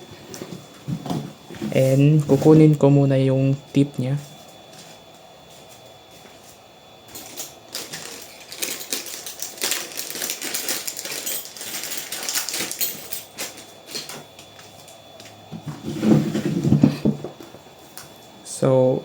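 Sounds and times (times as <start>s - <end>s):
man talking: 1.6s - 4.3s
small hard parts clicking and rattling: 7.1s - 14.2s.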